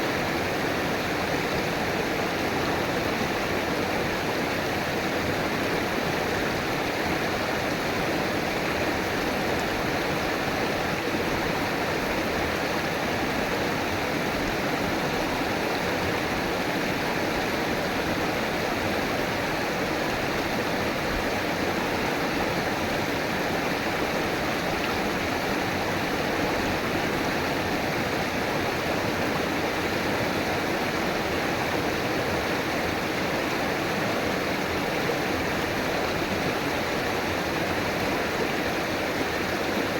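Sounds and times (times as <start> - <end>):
river water rushing over rocks: 0.0 - 39.9.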